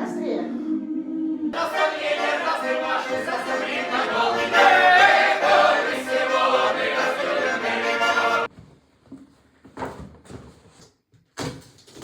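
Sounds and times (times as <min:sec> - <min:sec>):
choir singing a cappella: 0:00.0 - 0:08.5.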